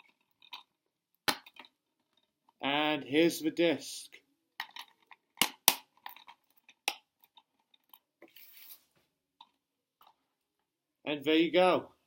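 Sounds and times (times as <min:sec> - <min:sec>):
short rustling scrape: 0:08.2 - 0:09.0.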